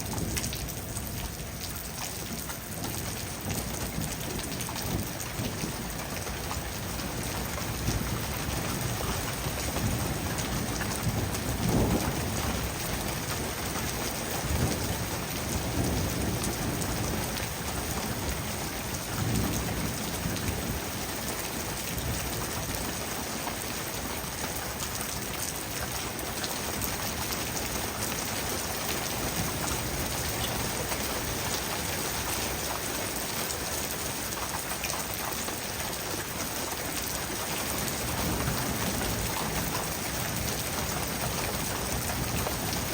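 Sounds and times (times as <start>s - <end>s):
heavy rain: 0.0s - 42.9s
thunder rumbles: 7.2s - 13.3s.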